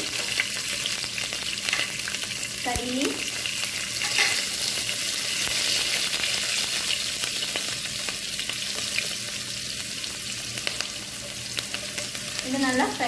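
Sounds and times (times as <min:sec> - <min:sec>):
spices sizzling in hot oil: 0:00.0 - 0:13.0.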